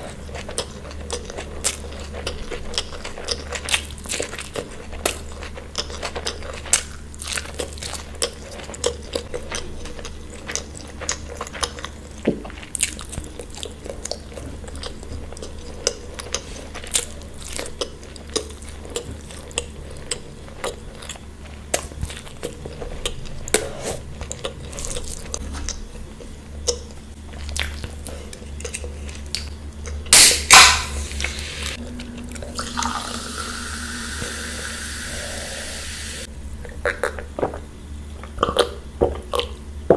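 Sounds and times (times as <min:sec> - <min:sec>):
chewing and crunching food: 0:00.0 - 0:30.7, 0:36.5 - 0:39.9
liquid being poured: 0:30.5 - 0:36.3.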